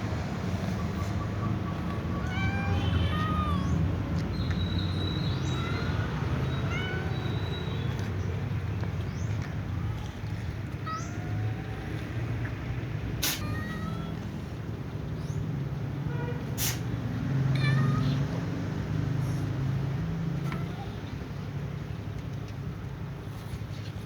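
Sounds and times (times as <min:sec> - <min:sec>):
cats meowing: 0:01.4 - 0:08.2, 0:09.3 - 0:12.5, 0:13.2 - 0:14.6, 0:17.5 - 0:18.4, 0:20.4 - 0:21.1.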